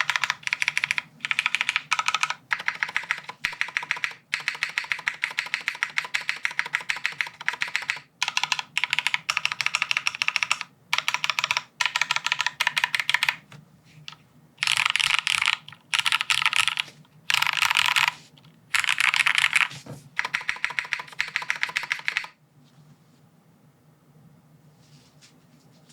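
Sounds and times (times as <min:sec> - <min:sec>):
typing on mechanical keyboard: 0:00.0 - 0:13.4, 0:14.1 - 0:22.4.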